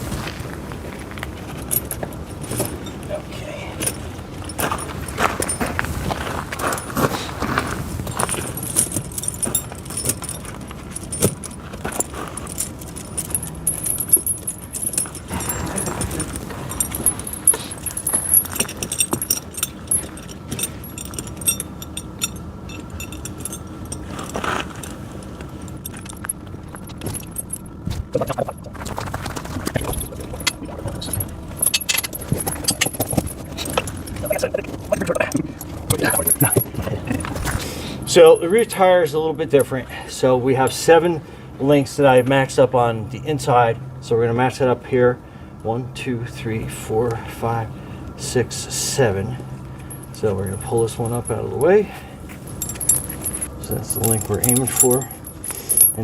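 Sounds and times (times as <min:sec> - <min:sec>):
chain links clinking and rattling: 0:01.4 - 0:40.0, 0:48.8 - 0:56.0
chain knocks: 0:08.0 - 0:27.8, 0:28.9 - 0:37.3, 0:52.4 - 0:56.0.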